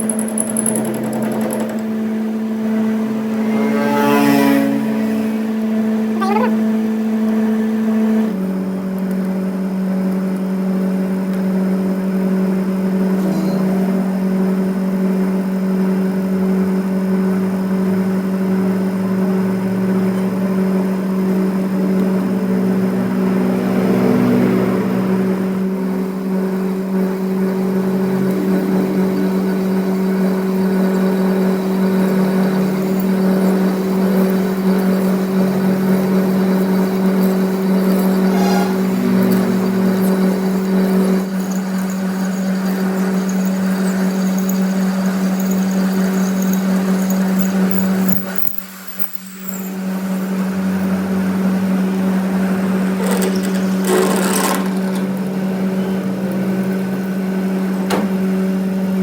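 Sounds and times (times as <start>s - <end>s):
machine motor humming: 25.8s - 48.0s.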